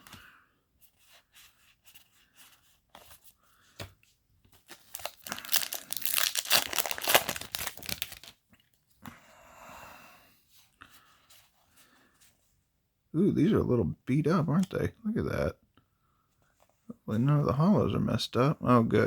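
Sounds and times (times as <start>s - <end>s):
foil wrapper tearing and crinkling: 4.6s - 8.4s.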